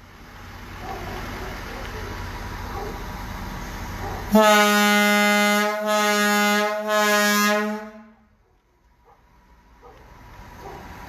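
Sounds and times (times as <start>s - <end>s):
air horn blast: 4.3s - 8.2s.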